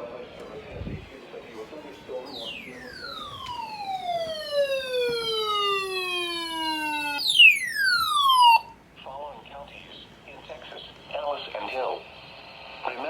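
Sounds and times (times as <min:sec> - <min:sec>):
siren tone sweeping down: 0:02.2 - 0:08.7.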